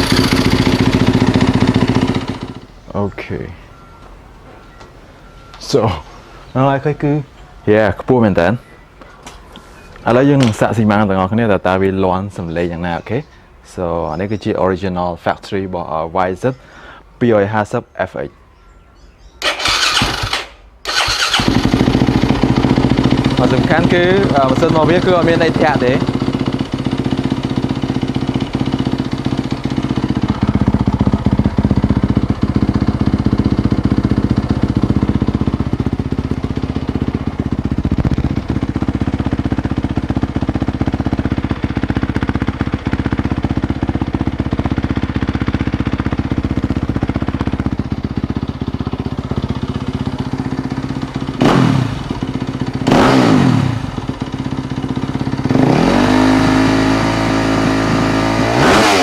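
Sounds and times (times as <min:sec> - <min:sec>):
motorcycle engine idling: 0:00.0 - 0:03.1, 0:19.4 - 0:59.0.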